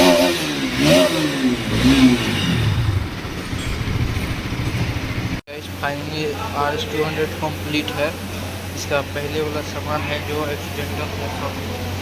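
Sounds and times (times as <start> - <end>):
motorcycle engine revving and idling: 0.0 - 5.4.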